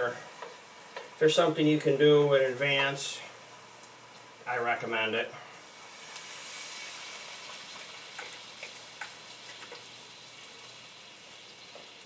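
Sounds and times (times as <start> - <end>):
food sizzling in hot oil: 5.6 - 12.0.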